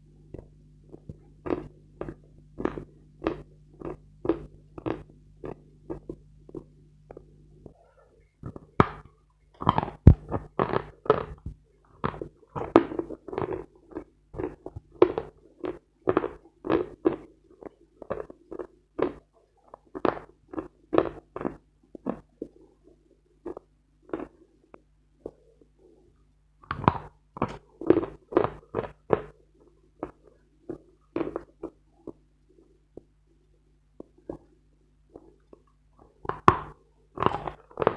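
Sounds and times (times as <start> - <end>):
crunchy chewing: 0.3 - 7.3, 12.0 - 22.6, 35.1 - 37.9.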